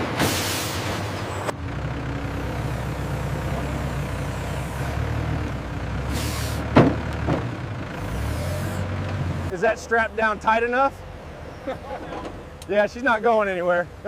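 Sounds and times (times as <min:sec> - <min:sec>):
heavy machine engine running: 0:00.0 - 0:11.2.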